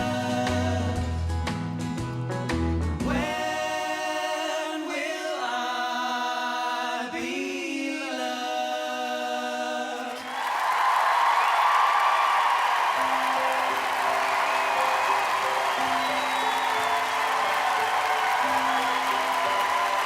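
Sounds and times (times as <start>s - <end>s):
men singing in harmony: 0.0s - 1.2s, 3.1s - 10.2s
audience applause and cheering: 10.1s - 20.0s.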